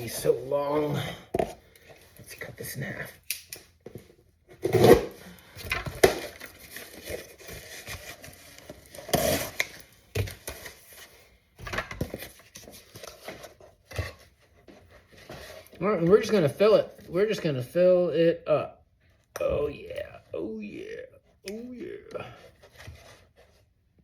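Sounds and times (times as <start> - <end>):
rustling and scraping on workbench: 11.9 - 16.5, 22.3 - 23.8.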